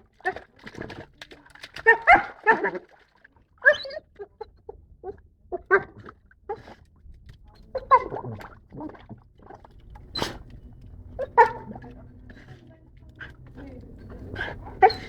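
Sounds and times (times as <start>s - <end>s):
dog barking underwater bubbling: 0.0s - 6.8s, 7.6s - 12.6s, 13.2s - 15.0s.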